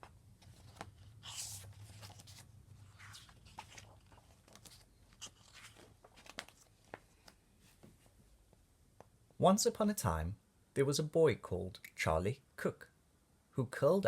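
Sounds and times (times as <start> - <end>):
paper rustling: 0.3 - 8.2
page swish: 0.4 - 6.6.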